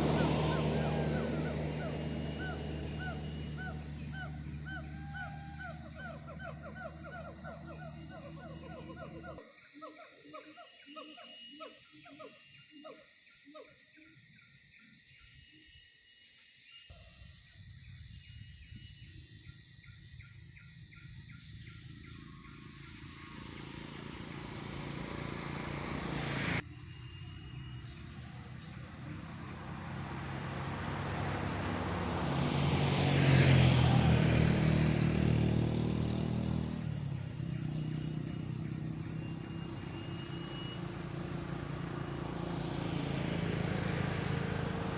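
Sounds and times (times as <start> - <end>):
vehicle passing: 0.0 - 9.4, 22.6 - 26.6, 27.8 - 44.9.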